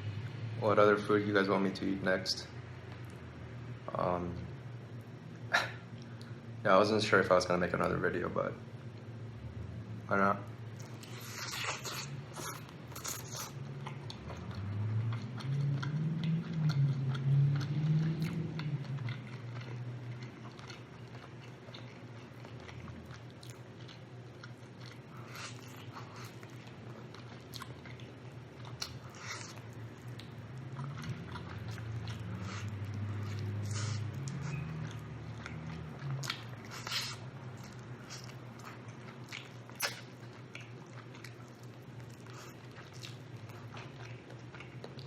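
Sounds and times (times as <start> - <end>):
chewing and biting chicken: 10.8 - 45.0
wet mouth clicks and smacks: 39.3 - 41.3.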